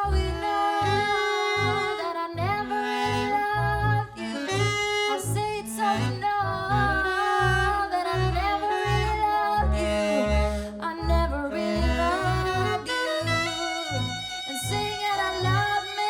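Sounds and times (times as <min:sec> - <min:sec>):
double bass notes: 0:00.0 - 0:16.0
person singing: 0:00.0 - 0:16.0
horns playing melody: 0:11.6 - 0:16.0.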